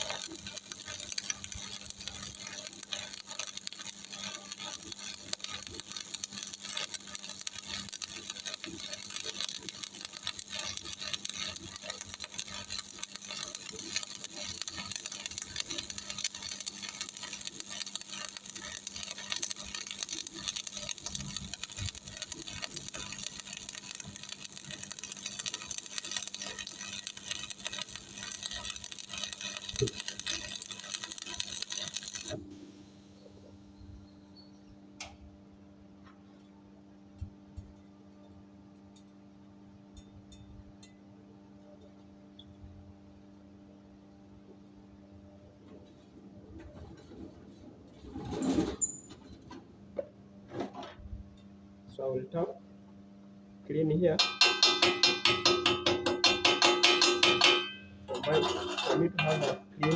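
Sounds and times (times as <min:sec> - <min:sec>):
welding arc crackling: 0:00.0 - 0:33.4, 0:53.8 - 0:59.9
welder electrical hum: 0:00.0 - 0:59.9.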